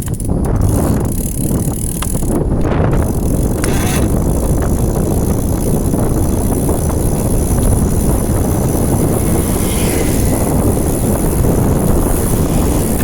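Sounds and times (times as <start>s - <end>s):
bicycle freewheel noise: 0.0s - 13.0s
road noise: 0.0s - 13.0s
wind rumble: 0.0s - 13.0s
thin high whine: 3.6s - 4.2s.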